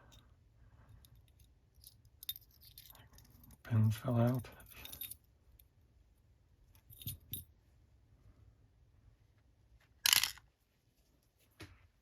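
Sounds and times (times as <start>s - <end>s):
padlock parts clinking: 1.0s - 3.6s, 4.2s - 5.3s.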